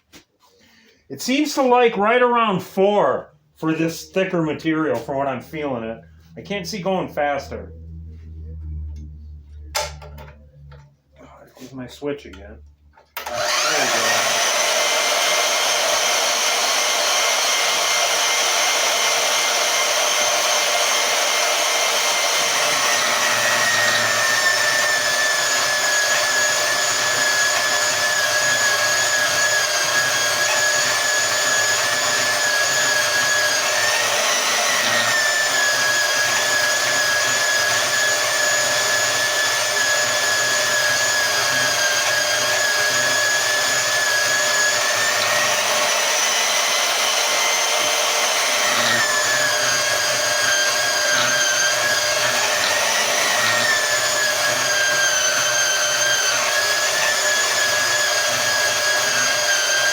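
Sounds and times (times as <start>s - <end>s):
band saw cutting metal: 13.2s - 59.9s.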